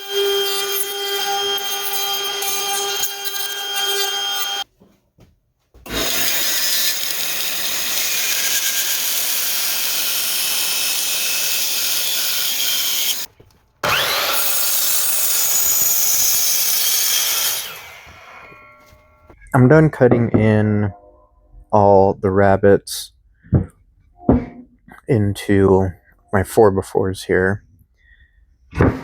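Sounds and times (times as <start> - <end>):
power tool cutting wood: 0.0 - 4.6, 5.9 - 19.4.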